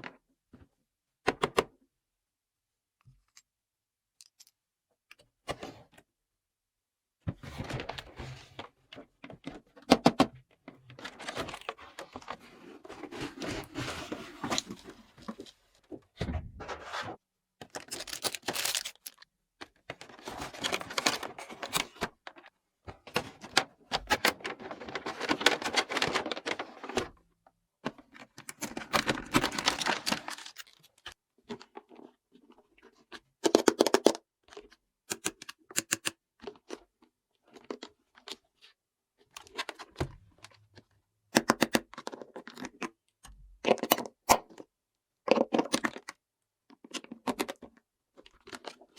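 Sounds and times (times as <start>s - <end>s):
packaging rustling: 17.7s - 19.2s, 28.6s - 31.1s.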